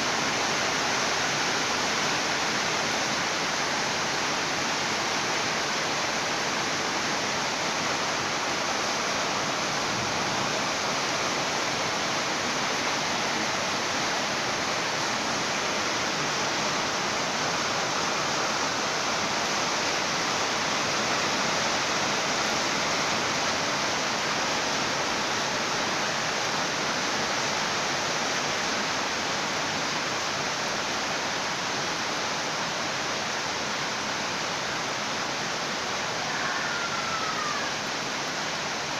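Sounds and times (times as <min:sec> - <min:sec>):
steady rain hiss: 0:00.0 - 0:38.9.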